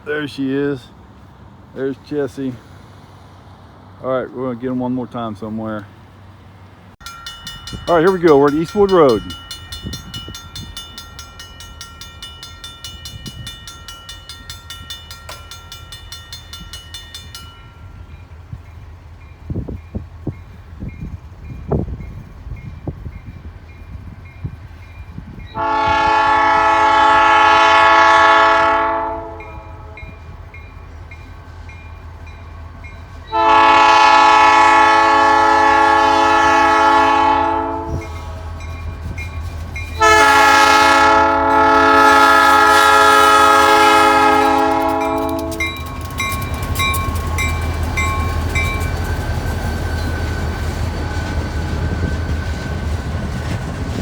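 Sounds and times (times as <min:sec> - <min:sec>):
heavy train rumbling: 0:00.0 - 0:54.0
crossing signal bell ringing: 0:07.0 - 0:53.1
locomotive air horn blasts: 0:25.5 - 0:30.1, 0:33.3 - 0:38.6, 0:40.0 - 0:45.8.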